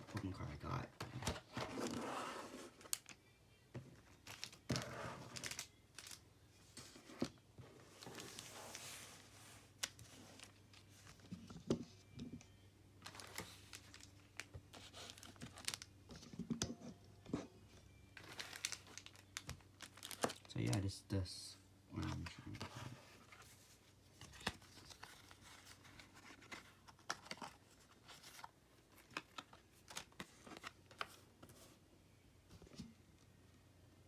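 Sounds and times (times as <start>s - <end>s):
cards being handled: 4.1s - 6.2s, 22.0s - 31.7s
card pack wrappers crinkling: 4.2s - 6.2s, 13.0s - 15.9s, 18.2s - 21.0s, 24.2s - 31.2s.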